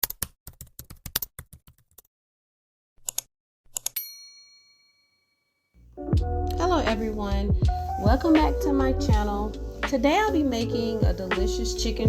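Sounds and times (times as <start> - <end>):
typewriter bell ding: 4.0 - 5.2.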